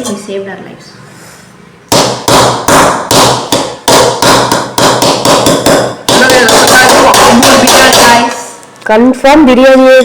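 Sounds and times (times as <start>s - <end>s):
utensil knocking on cookware: 1.9s - 8.4s.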